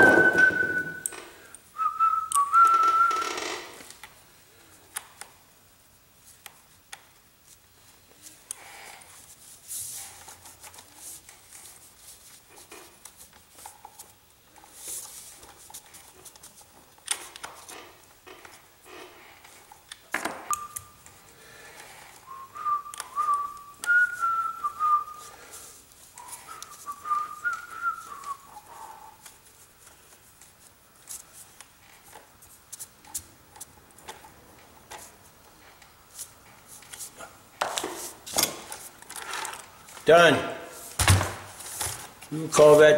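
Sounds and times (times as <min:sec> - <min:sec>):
sharp knock: 0:00.0 - 0:01.0
person whistling a tune: 0:00.0 - 0:01.1, 0:01.8 - 0:03.3, 0:20.5 - 0:20.9, 0:22.3 - 0:25.3, 0:26.5 - 0:29.2
small parts clicking and rattling: 0:29.2 - 0:40.1.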